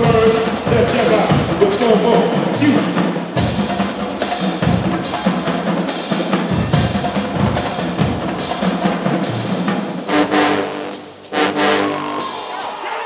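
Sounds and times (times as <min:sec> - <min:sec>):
drumline snares and bass drums: 0:00.0 - 0:13.0
brass chord: 0:10.1 - 0:12.4.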